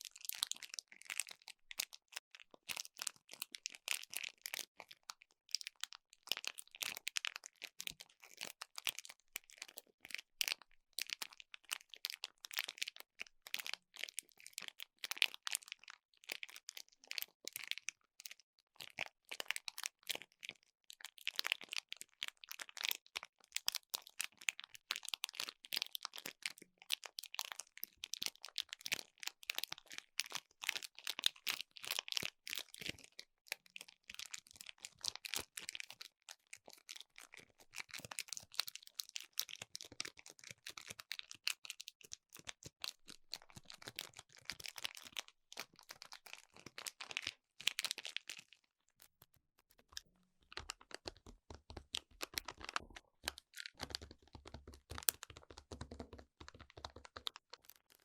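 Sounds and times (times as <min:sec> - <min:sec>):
rapid crackling and crinkling: 0:18.8 - 0:58.0
taps and clicks: 0:49.6 - 0:57.4.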